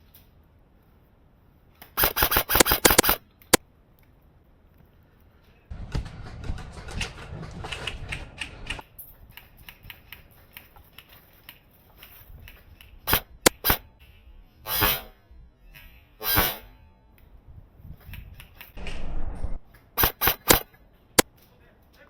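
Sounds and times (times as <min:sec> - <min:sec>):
loud sharp cracks: 0:01.8 - 0:03.6, 0:13.1 - 0:14.0, 0:14.7 - 0:15.2, 0:16.2 - 0:16.8, 0:19.8 - 0:20.8
mechanical clicking and rattling: 0:01.8 - 0:03.6, 0:05.8 - 0:13.9, 0:19.8 - 0:21.3.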